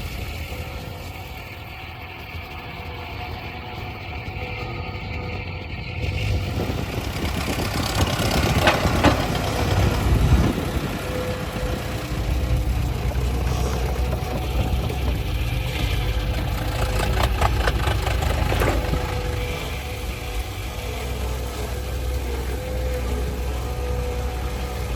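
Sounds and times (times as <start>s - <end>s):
heavy vehicle engine running: 0.0s - 24.9s
clattering: 3.8s - 20.2s.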